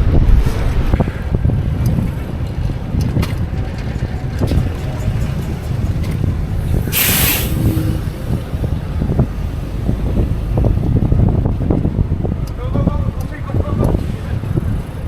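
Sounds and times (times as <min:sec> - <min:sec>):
street traffic noise: 0:00.0 - 0:15.0
wind rumbling on microphone: 0:00.0 - 0:15.0
loud hissing air burst: 0:06.8 - 0:08.0
sharp ticks: 0:11.4 - 0:14.0.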